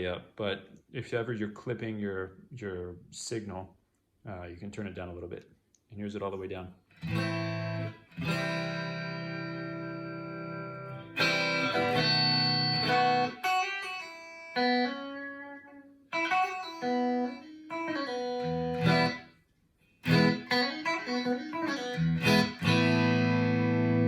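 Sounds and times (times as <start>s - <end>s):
clean electric guitar playing: 7.0s - 19.4s, 20.0s - 24.0s.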